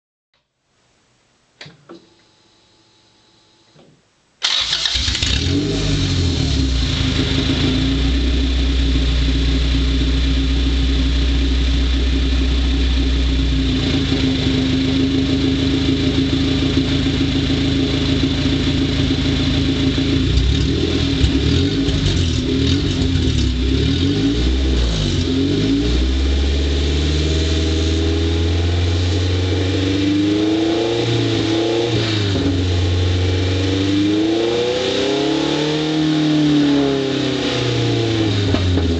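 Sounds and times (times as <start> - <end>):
car engine starting and idling: 4.4 - 38.9
engine revving: 4.5 - 10.3, 19.2 - 38.9.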